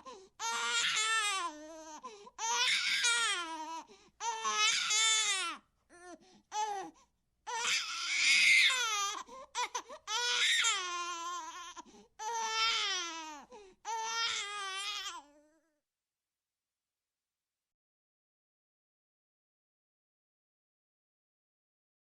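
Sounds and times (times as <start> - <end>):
baby-like wailing: 0.0 - 6.9, 7.5 - 15.8.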